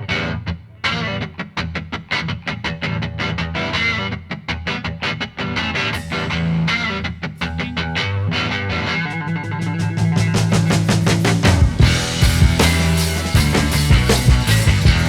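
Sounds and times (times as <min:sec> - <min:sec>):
distorted electric guitar music: 0:00.0 - 0:15.0
bass: 0:05.9 - 0:15.0.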